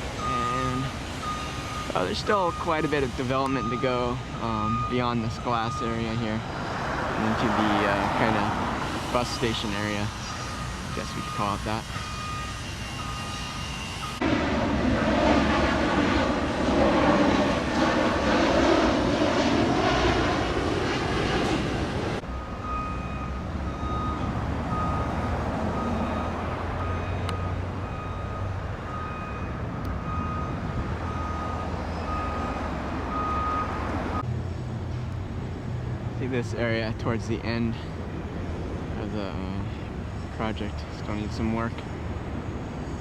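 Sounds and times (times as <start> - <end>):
jet airliner passing overhead: 0.0 - 43.0
reversing alarm beeping: 0.1 - 6.8, 7.4 - 14.2, 22.2 - 34.2
low rumble: 14.2 - 22.3.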